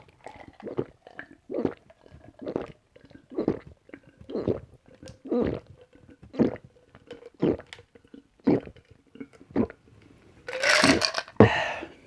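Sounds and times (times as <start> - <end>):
person gulping fizzy drink: 0.0 - 9.8, 10.5 - 11.9
loud breathy exhale: 11.4 - 12.0.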